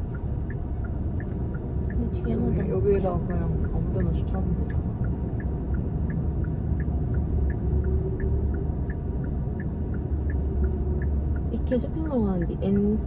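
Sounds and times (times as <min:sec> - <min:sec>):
car engine rumble in cabin: 0:00.0 - 0:13.0
turn signal ticking: 0:00.0 - 0:13.0.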